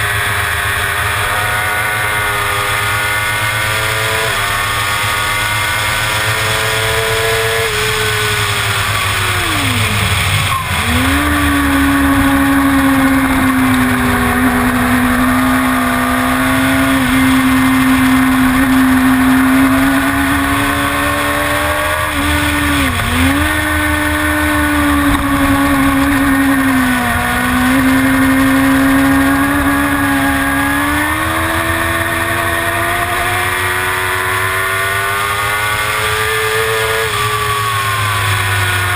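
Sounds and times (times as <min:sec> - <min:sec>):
motorcycle engine at race pace: 0:00.0 - 0:38.9.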